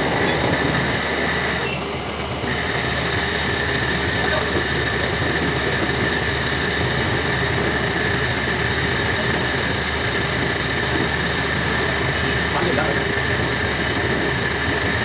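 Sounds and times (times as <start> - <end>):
metal lathe whining: 0.0 - 15.0.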